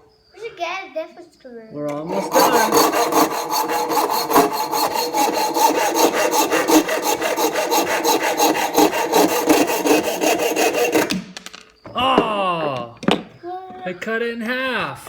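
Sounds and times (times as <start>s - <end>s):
hacksaw cutting metal: 1.9s - 11.3s.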